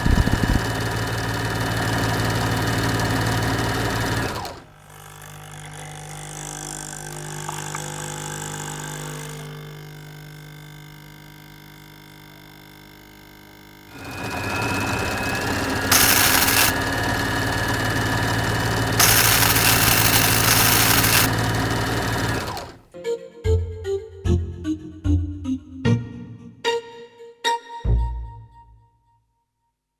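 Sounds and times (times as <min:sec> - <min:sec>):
mechanical hum: 0:00.0 - 0:00.8, 0:04.4 - 0:22.9
machine running: 0:00.0 - 0:04.6, 0:13.9 - 0:22.9.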